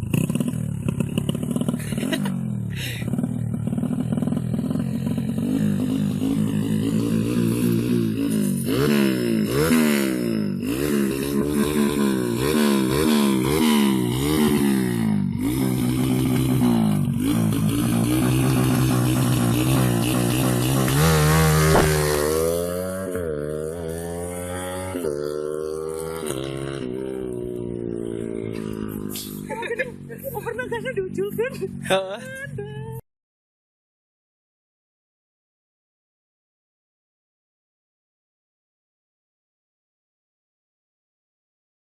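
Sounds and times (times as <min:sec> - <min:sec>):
motorcycle engine revving: 0:00.0 - 0:32.2.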